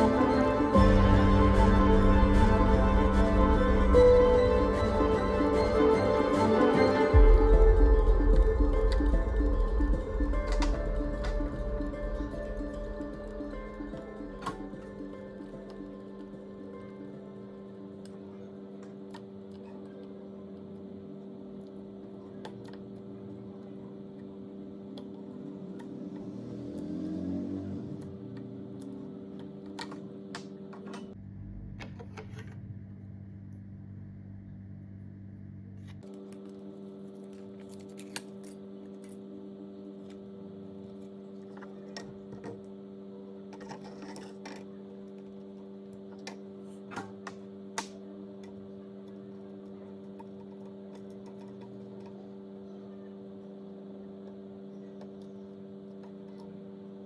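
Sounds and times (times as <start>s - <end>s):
steady hum: 0.0s - 26.4s
steady low hum: 0.0s - 57.0s.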